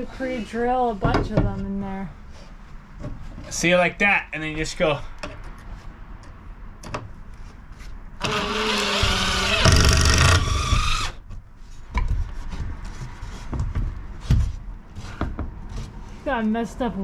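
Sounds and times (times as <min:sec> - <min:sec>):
power drill whine: 0:08.2 - 0:11.2.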